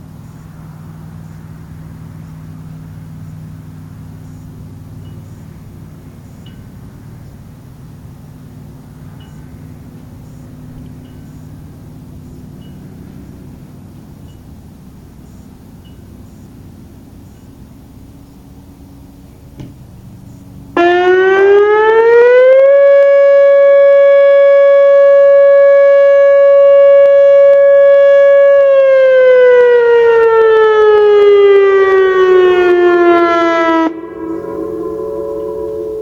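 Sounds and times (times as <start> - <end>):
outdoor warning siren tone: 20.2 - 36.0.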